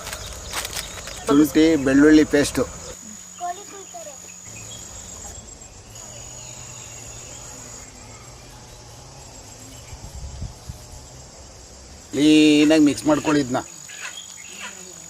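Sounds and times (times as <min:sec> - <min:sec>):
insects trilling: 0:00.0 - 0:15.0.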